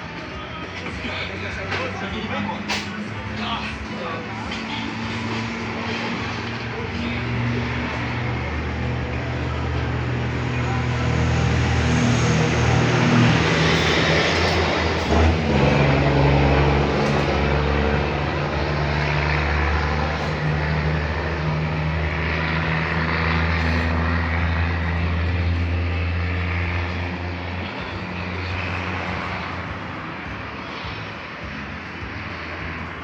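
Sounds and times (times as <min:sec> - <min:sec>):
bass-heavy music through car speakers: 0:00.0 - 0:11.2, 0:27.7 - 0:33.0.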